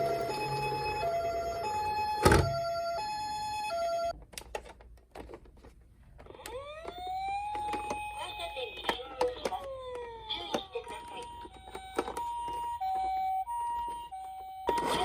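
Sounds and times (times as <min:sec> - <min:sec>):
rising siren wail: 0:00.0 - 0:04.1, 0:06.4 - 0:08.2
toy two-tone siren: 0:00.0 - 0:04.1, 0:06.3 - 0:15.0.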